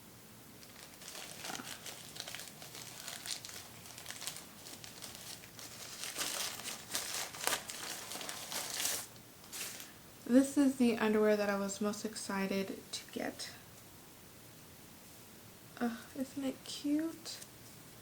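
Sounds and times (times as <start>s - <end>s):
packaging crinkling: 0.6s - 10.0s.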